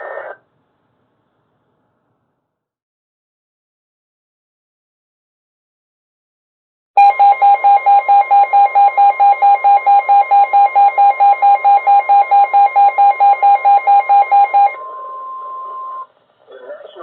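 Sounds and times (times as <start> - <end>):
steady warning alarm tone: 7.0 - 16.0.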